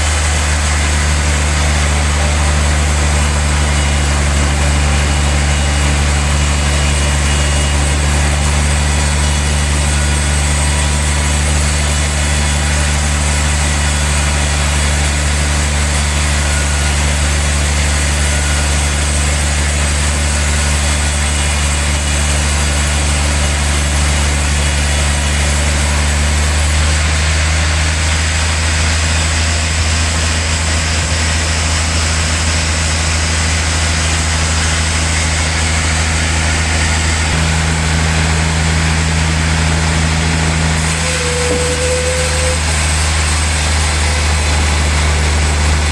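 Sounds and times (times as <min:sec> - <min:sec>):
sawmill motor hum: 0:00.0 - 0:45.9
saw hiss: 0:34.5 - 0:45.9.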